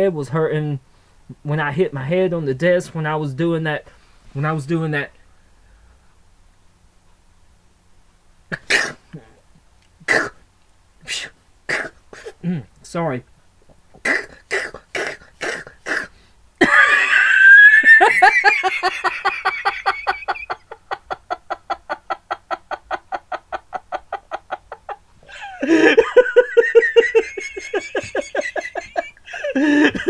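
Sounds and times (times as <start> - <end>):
man laughing hard: 16.6 - 30.0.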